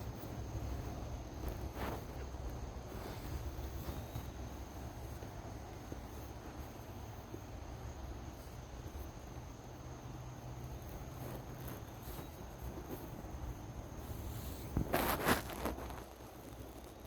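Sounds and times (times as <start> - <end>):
crickets trilling: 0.0 - 17.0
low steady rumble: 0.0 - 17.0.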